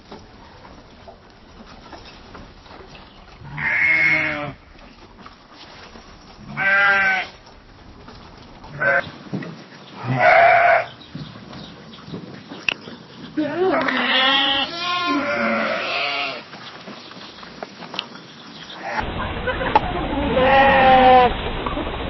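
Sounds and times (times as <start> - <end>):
sheep bleating: 3.4 - 4.6, 6.5 - 7.4, 10.0 - 10.9, 13.4 - 16.5.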